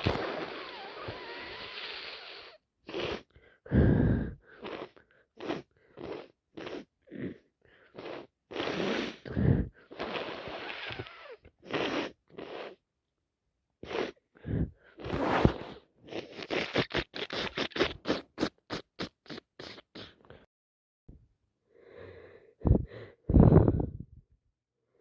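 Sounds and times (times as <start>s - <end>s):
person blowing nose: 0.0s - 12.8s, 13.8s - 20.4s.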